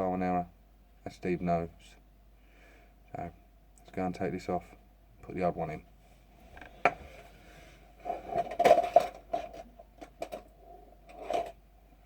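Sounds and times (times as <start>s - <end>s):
small parts clicking and scraping: 8.0s - 11.6s.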